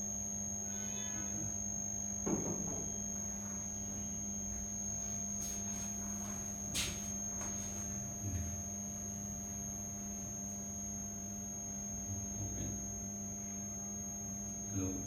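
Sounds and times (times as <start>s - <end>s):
electrical mains hum: 0.0s - 15.0s
high whine: 0.0s - 15.0s
soft thump: 2.2s - 3.0s.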